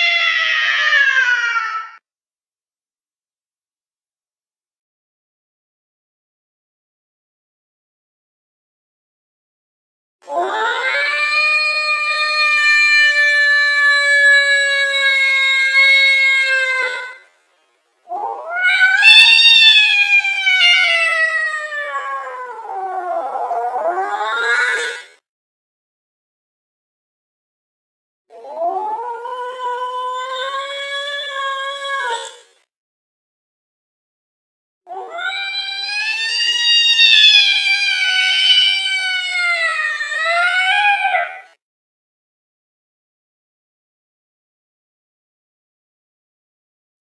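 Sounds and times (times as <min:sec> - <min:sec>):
slowed-down cat yowls: 0:00.0 - 0:02.0, 0:18.1 - 0:25.2, 0:34.9 - 0:41.6.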